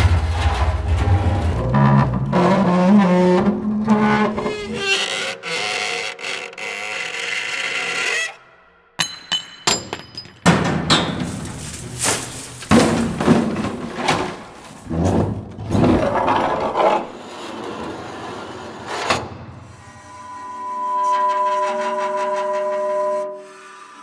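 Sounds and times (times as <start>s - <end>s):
heavy metal impacts and scrapes: 0.0s - 3.4s, 9.0s - 17.2s.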